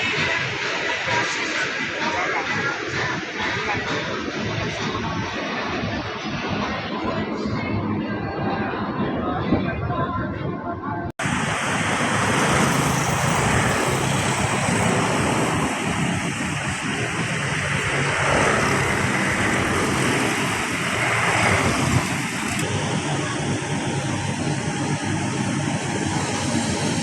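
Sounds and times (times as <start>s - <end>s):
wind buffeting microphone: 0.0s - 27.0s
surf breaking on beach: 11.2s - 23.1s.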